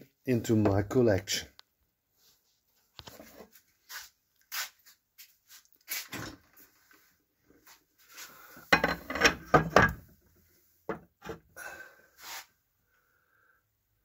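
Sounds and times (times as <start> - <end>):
tools knocking and clattering: 8.7 - 10.2.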